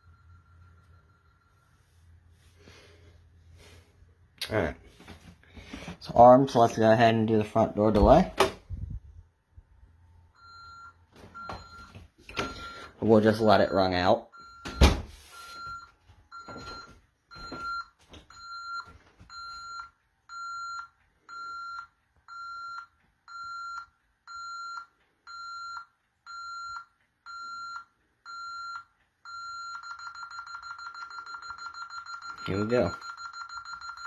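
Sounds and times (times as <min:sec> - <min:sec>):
alarm keypad beeping: 0:10.4 - 0:34.0.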